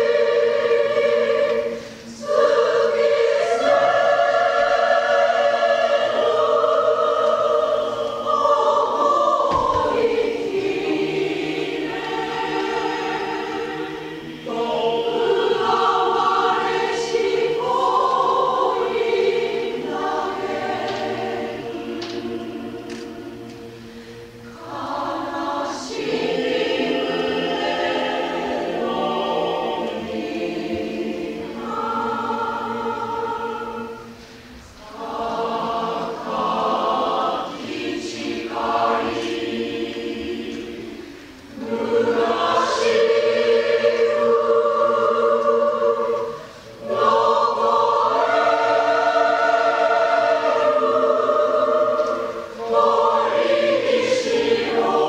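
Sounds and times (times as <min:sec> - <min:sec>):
choir singing: 0:00.0 - 0:55.0.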